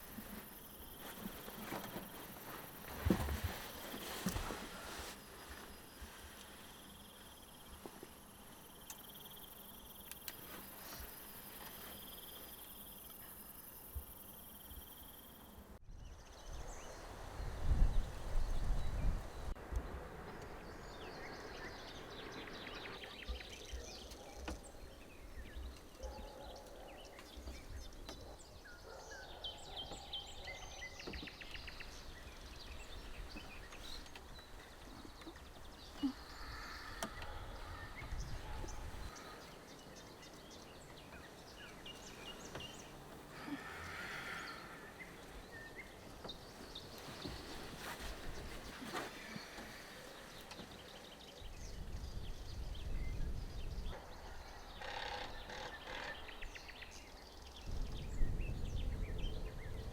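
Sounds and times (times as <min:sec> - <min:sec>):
small birds chirping: 0:18.0 - 0:59.9.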